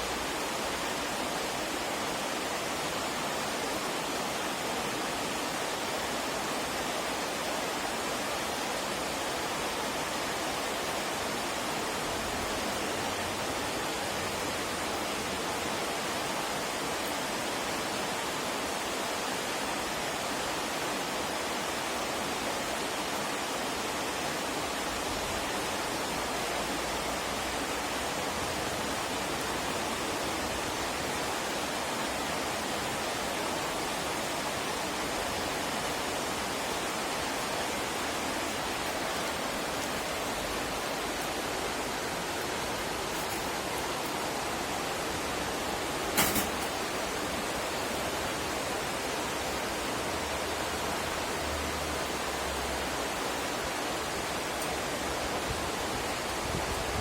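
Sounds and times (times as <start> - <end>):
wood fire hissing and crackling: 21.7 - 49.8.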